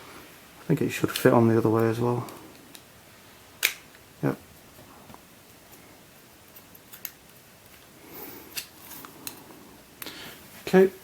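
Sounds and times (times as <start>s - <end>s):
soft rustle: 7.6s - 11.0s.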